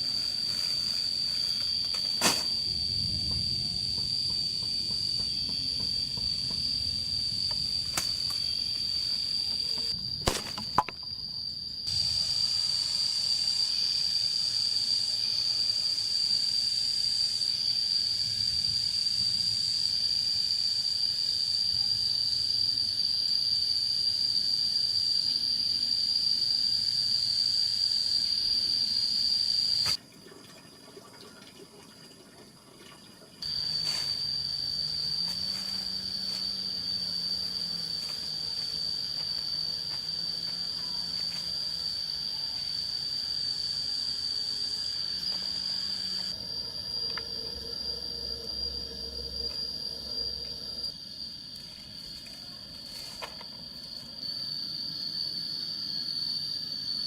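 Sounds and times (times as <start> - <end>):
insects shrilling: 0.0 - 3.1, 11.4 - 30.0, 33.4 - 57.0.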